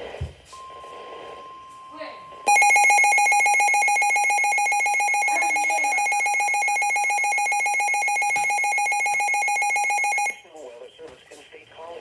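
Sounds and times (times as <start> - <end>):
pulsing electronic alarm beep: 2.5 - 10.4.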